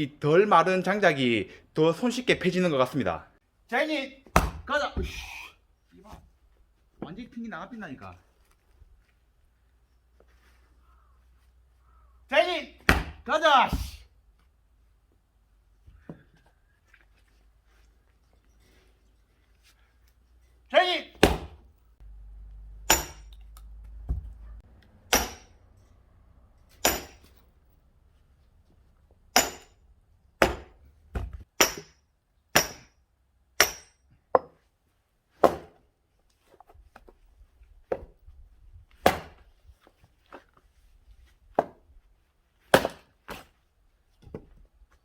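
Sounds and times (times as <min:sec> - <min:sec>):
axe striking firewood: 0:04.2 - 0:05.2, 0:12.8 - 0:13.9, 0:21.2 - 0:21.7, 0:22.9 - 0:24.4, 0:25.1 - 0:25.6, 0:26.7 - 0:27.4, 0:29.3 - 0:29.8, 0:30.4 - 0:33.0, 0:33.6 - 0:34.6, 0:35.4 - 0:35.8, 0:39.0 - 0:39.5, 0:42.6 - 0:43.6.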